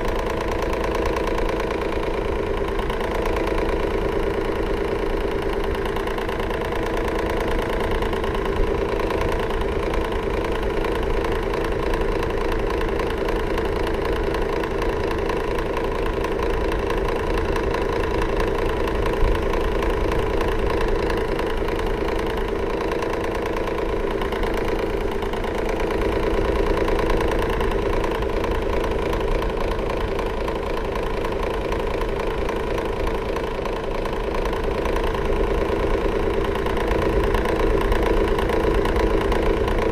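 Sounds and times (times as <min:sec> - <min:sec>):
electric fan motor hum: 0:00.0 - 0:39.9
fine rapid rattle: 0:00.0 - 0:39.9.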